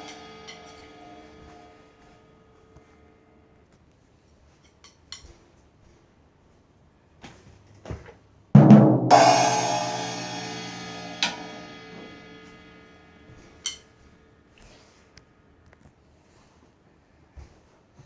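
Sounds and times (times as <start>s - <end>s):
cymbal crash ringing: 0.0s - 1.8s, 8.6s - 13.7s
drum hits: 8.6s - 12.9s.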